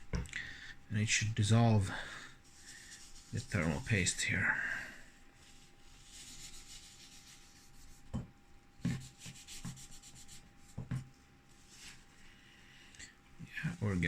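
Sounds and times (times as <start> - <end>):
paper rubbing on heatsink: 2.4 - 4.3, 5.4 - 8.1, 8.8 - 10.5, 13.5 - 14.0.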